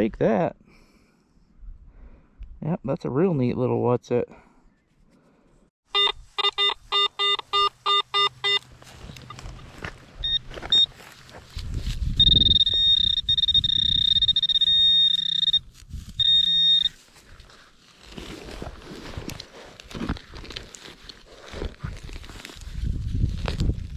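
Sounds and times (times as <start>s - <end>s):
metal detector beeping: 5.9s - 9.5s, 10.2s - 11.0s, 12.1s - 17.0s
scuffing handling noise: 8.4s - 13.1s, 15.5s - 23.9s.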